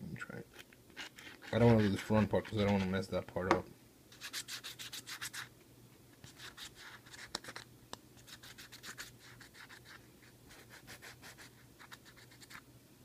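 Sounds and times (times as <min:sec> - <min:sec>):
glue applicator scratching plastic: 0:00.6 - 0:02.9.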